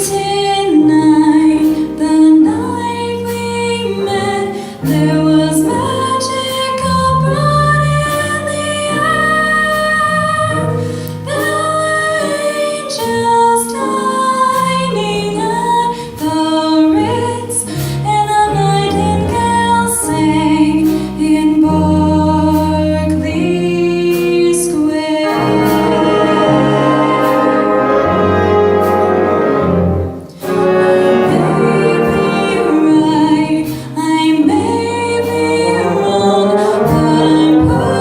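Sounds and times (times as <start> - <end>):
bass line and accompaniment: 0.0 - 38.0
vocal ensemble singing in harmony: 24.6 - 38.0.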